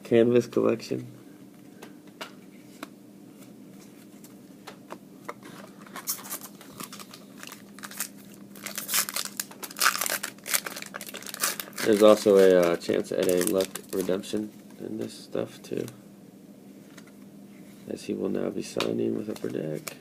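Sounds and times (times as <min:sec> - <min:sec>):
foil wrapper crinkling and tearing: 0:05.9 - 0:14.4.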